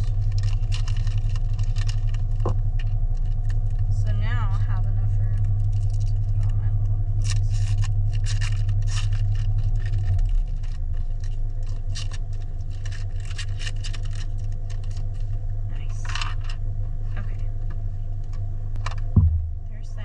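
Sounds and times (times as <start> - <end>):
plastic toy pieces scraping and clicking: 0.0 - 3.6, 7.2 - 15.4
steady low rumble: 0.0 - 20.0.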